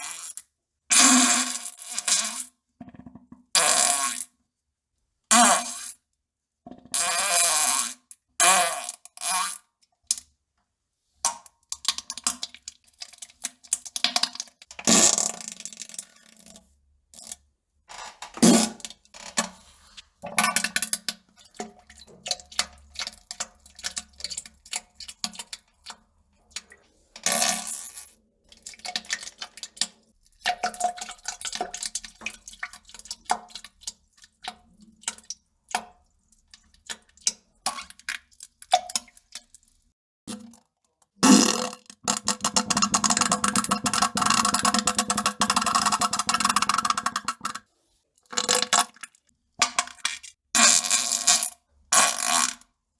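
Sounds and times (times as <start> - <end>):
flatulence and sputtering: 41.2 - 47.6.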